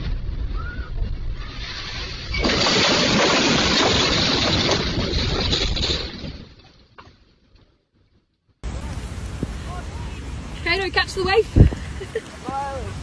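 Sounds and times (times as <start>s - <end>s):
ice crashing into water: 1.4s - 6.6s.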